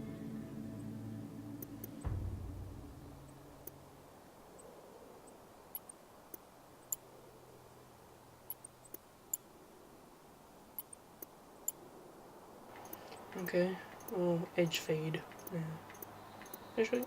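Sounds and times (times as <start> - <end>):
faint steady hum: 0.0 - 17.0
computer mouse clicking: 12.8 - 14.2, 15.3 - 17.0.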